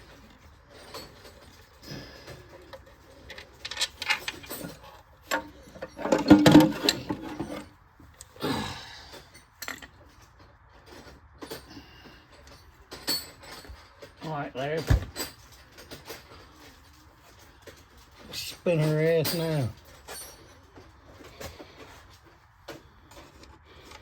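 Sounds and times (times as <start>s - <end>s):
metal clinking: 0.7s - 8.3s, 18.7s - 20.9s.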